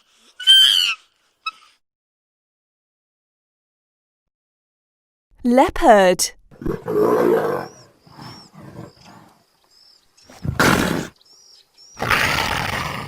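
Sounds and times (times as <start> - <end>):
leopard grunting: 6.5 - 9.4, 10.2 - 11.2, 12.0 - 13.0
leopard roaring: 6.5 - 9.4, 10.3 - 11.2, 12.0 - 13.0.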